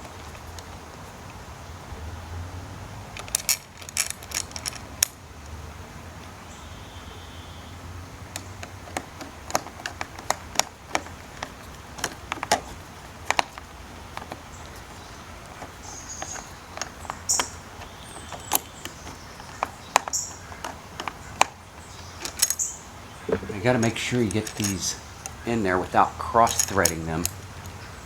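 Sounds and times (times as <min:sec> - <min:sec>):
metal parts clicking and clinking: 0:03.2 - 0:05.2, 0:08.3 - 0:14.7, 0:22.2 - 0:22.7, 0:23.3 - 0:27.8.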